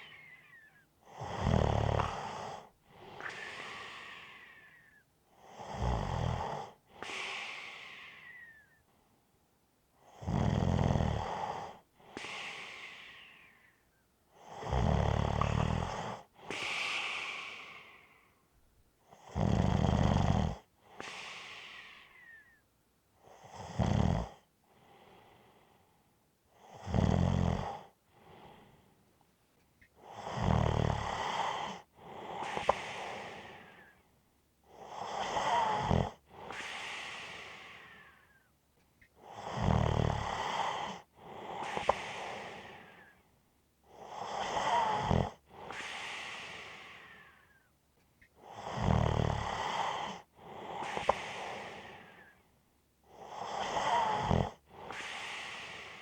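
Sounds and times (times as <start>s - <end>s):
breathy exhale: 0.0s - 0.8s, 2.0s - 5.1s, 7.0s - 8.8s, 12.1s - 13.9s, 16.5s - 18.5s, 21.0s - 22.6s, 32.4s - 34.0s, 35.5s - 38.5s, 44.7s - 47.7s, 49.5s - 52.4s, 53.4s - 56.0s
person snoring: 0.0s - 4.8s, 14.6s - 18.1s, 26.7s - 27.8s, 30.1s - 33.9s, 34.8s - 38.2s, 39.3s - 43.1s, 44.0s - 47.4s, 48.4s - 52.3s, 53.1s - 56.0s.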